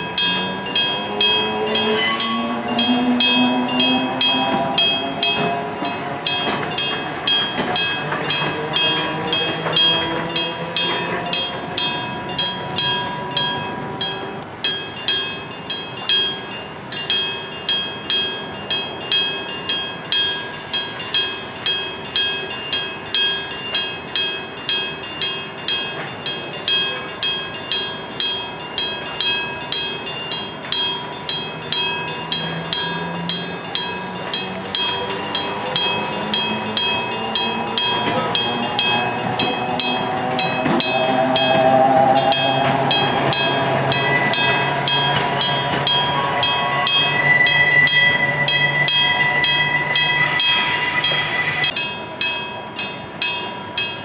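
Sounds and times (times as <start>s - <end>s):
approaching train: 0.0s - 54.0s
level crossing bell ringing: 0.0s - 54.0s
high steady squeal: 1.7s - 3.5s, 20.2s - 24.2s, 34.7s - 51.8s.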